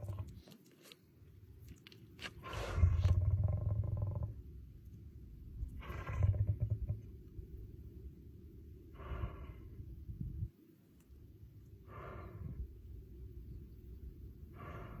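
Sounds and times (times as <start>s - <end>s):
lion breathing heavily: 2.4s - 4.0s, 8.9s - 10.0s, 11.8s - 12.8s, 14.5s - 15.0s
low rumble: 2.4s - 15.0s.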